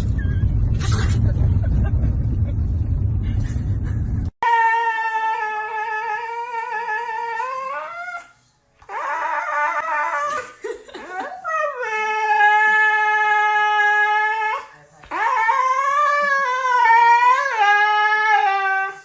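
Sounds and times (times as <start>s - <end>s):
husky howling and whining: 4.4s - 10.5s, 11.1s - 19.0s.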